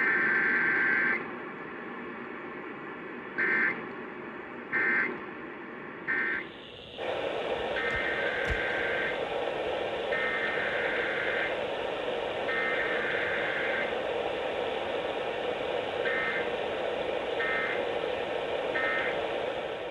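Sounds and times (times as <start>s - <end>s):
static hiss: 6.1s - 19.9s.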